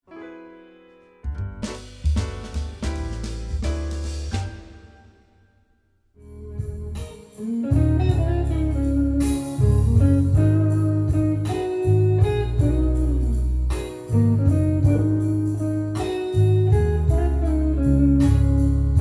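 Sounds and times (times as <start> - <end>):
recorded music: 1.2 - 5.4.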